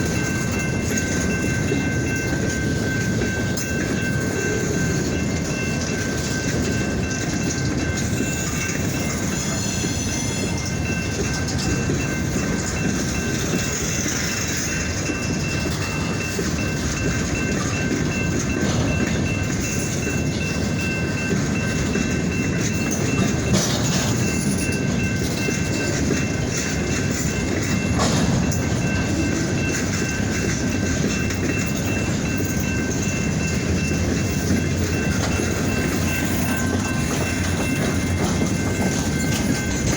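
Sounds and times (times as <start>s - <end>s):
high-pitched steady tones: 0.0s - 39.9s
train wheels rumbling on rails: 0.0s - 39.9s
metal clanks: 27.6s - 30.6s.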